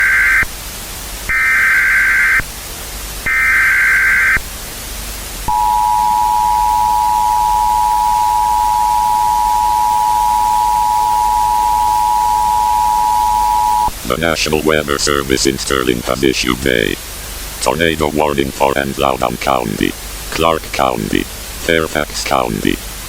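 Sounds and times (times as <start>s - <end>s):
buzzy data bursts: 0.0s - 0.6s, 1.3s - 2.6s, 3.2s - 4.5s, 5.5s - 17.0s
constant hiss: 0.0s - 23.0s
two-tone attention signal: 5.5s - 13.9s.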